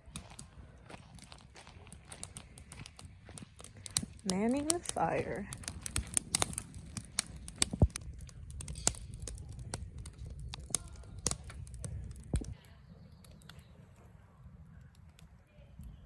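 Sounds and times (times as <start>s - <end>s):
sharp pops and snaps: 0.0s - 13.7s
campfire crackling: 0.0s - 16.0s
low rumble: 3.9s - 16.0s.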